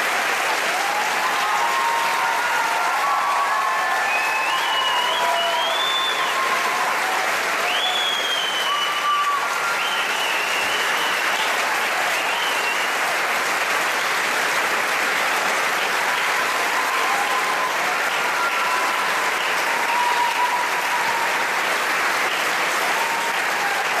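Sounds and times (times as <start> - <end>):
audience applauding: 0.0 - 24.0
faint voices or whistles: 4.0 - 6.8, 7.6 - 11.5, 12.1 - 13.0, 16.9 - 21.2.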